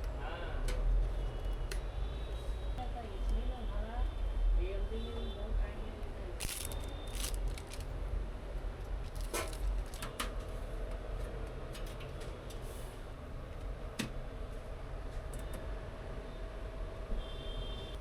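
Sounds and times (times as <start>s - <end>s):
low background hum: 6.0s - 10.8s.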